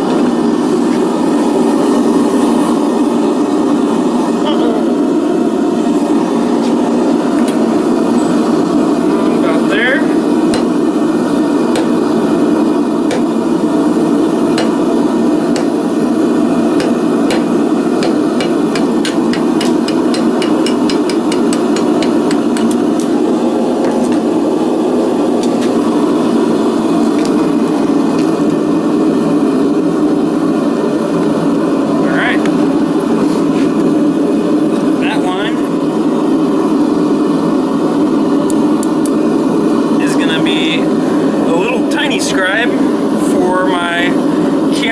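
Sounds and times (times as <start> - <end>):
forge roaring: 0.2 - 44.9
hammer striking cutter on steel: 10.5 - 10.8, 11.7 - 12.0, 13.1 - 13.4, 14.6 - 15.9, 16.8 - 23.1.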